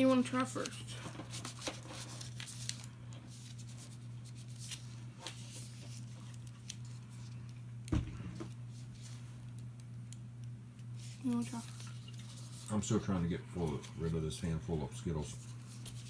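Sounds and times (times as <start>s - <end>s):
wrappers crinkling and tearing: 0.0s - 7.5s, 11.0s - 13.0s
steady low hum: 0.0s - 16.0s
dull thump: 7.9s - 8.5s.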